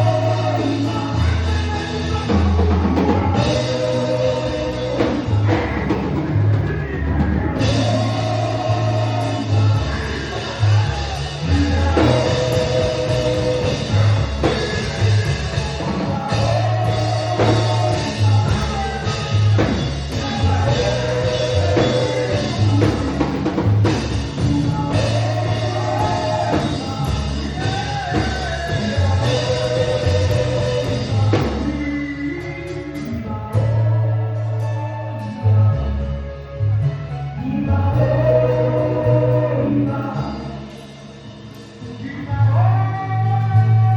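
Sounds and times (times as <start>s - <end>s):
person singing: 0.0s - 36.2s, 37.1s - 43.9s
gospel band playing: 0.0s - 43.9s.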